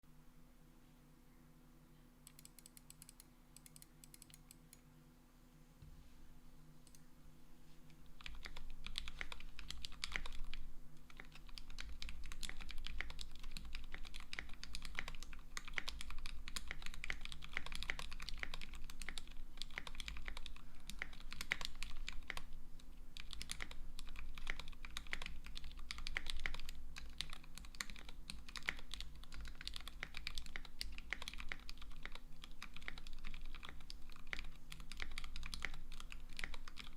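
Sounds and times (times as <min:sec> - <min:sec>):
typing on mechanical keyboard: 0:08.2 - 0:22.5, 0:23.2 - 0:36.9.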